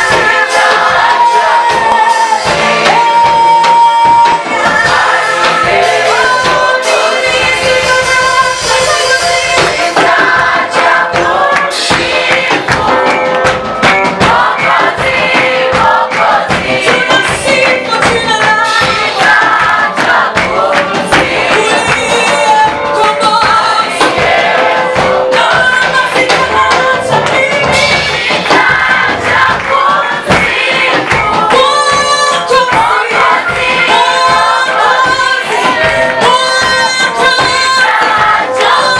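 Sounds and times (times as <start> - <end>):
band accompaniment: 0.0 - 38.9
choir singing gospel song: 0.0 - 38.9.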